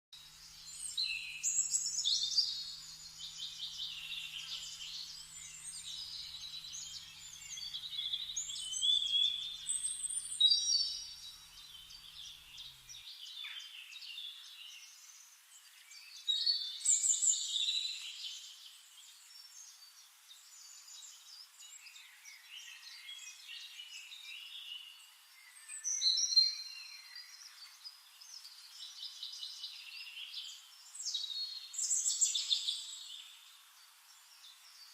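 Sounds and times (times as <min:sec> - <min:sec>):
songbirds singing and chirping: 0:00.2 - 0:34.9.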